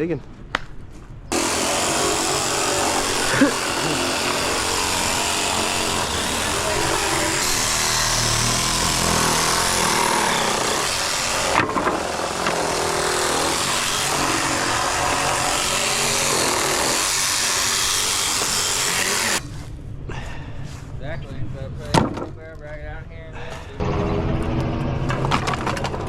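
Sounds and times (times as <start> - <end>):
power tool running loudly: 1.3 - 19.4.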